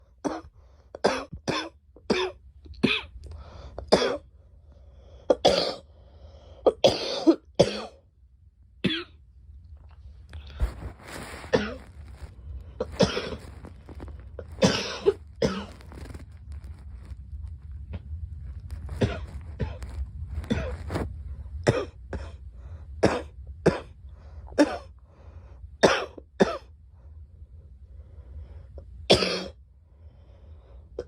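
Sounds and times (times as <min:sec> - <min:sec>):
girl coughing: 0:00.3 - 0:03.2, 0:03.9 - 0:04.2, 0:05.3 - 0:05.9, 0:06.7 - 0:08.0, 0:11.4 - 0:11.9, 0:12.8 - 0:13.6, 0:14.4 - 0:15.8, 0:19.0 - 0:19.8, 0:20.5 - 0:20.8, 0:21.6 - 0:22.4, 0:23.0 - 0:23.9, 0:24.6 - 0:24.9, 0:25.8 - 0:26.7, 0:29.1 - 0:29.6.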